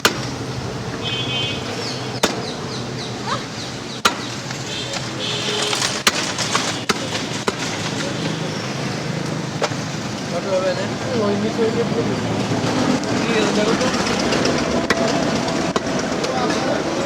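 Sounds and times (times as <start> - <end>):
cleaver chopping meat: 0.0 - 0.3, 2.2 - 2.6, 4.0 - 4.4
busy market background: 0.0 - 17.0.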